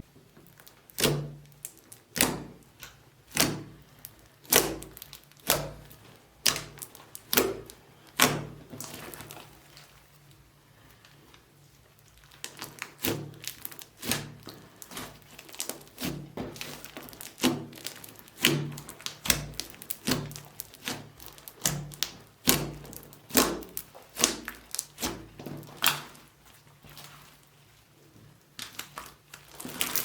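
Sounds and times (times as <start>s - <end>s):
sticky slime clicks and thuds: 0.5s - 9.4s, 12.4s - 26.2s.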